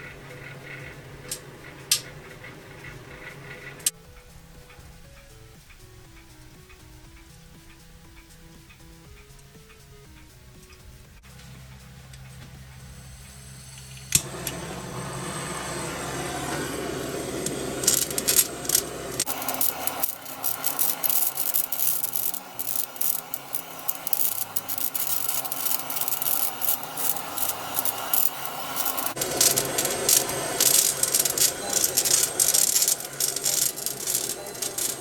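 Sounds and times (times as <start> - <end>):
food crackling and popping in microwave: 13.7 - 35.0.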